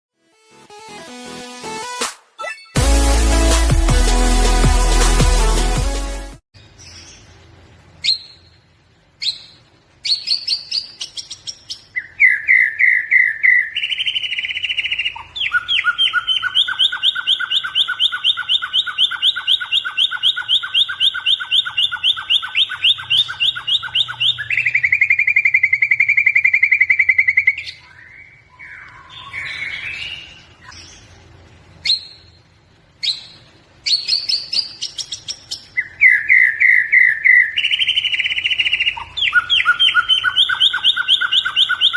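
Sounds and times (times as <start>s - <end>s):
bird singing rapid trills: 9.2s - 31.0s, 31.8s - 41.9s.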